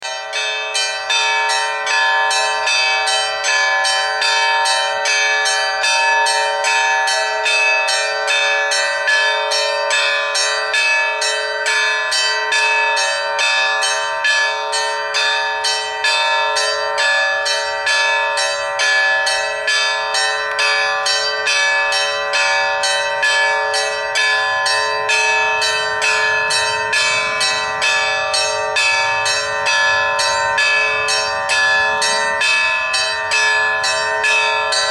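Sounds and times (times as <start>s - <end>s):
church bells pealing: 0.0s - 34.9s.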